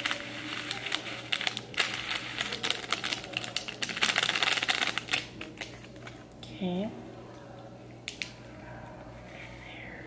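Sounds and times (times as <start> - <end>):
candy sprinkles rattling: 0.0 - 6.1.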